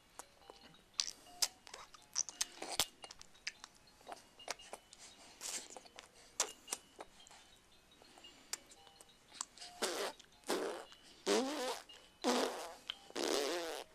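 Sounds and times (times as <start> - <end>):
mouth clicks and wet smacks: 1.0 - 3.8.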